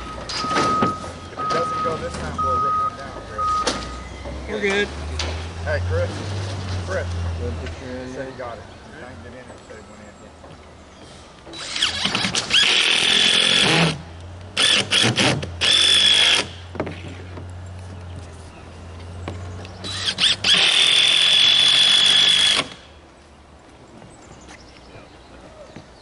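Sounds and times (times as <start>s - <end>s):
power drill whining: 11.6s - 14.0s, 14.6s - 16.6s, 19.9s - 22.8s.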